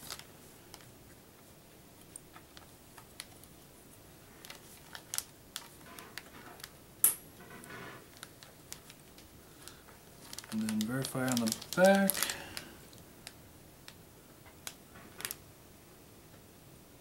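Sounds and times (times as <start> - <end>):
rustling: 7.4 - 13.4.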